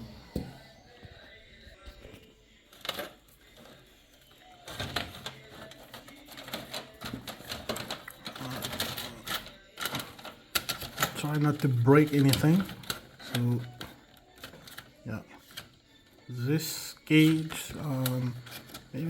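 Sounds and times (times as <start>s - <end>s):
computer hardware clicking and rattling: 4.6s - 15.8s, 17.1s - 19.0s.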